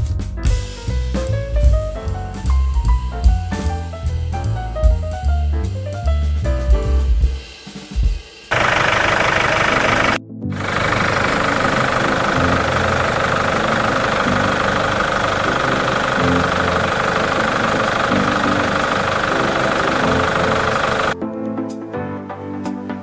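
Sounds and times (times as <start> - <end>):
diesel engine idling with clatter: 8.5 - 21.2
background music: 16.1 - 23.0.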